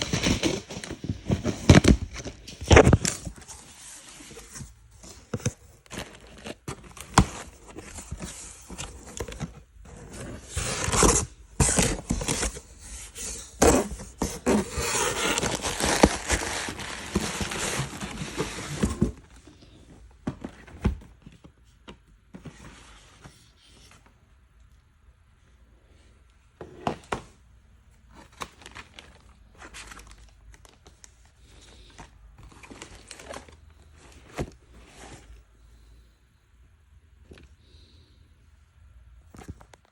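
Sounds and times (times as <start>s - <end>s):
box wrapping crinkling: 0.0s - 19.3s, 32.4s - 35.2s
box thunks and scrapes: 0.0s - 19.4s.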